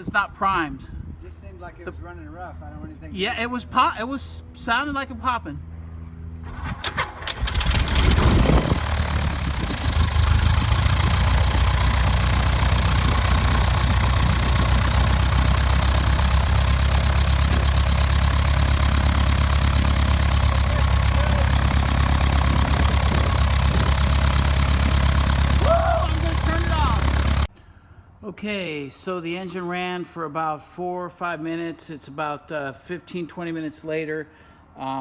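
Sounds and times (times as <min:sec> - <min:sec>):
aircraft engine starting and running: 0:05.6 - 0:27.5.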